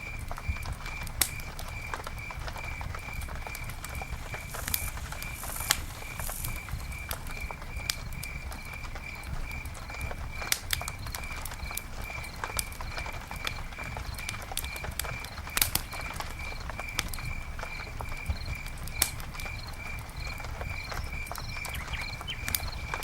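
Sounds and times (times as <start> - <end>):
campfire crackling and popping: 0.0 - 23.0
short hiss: 4.2 - 6.8.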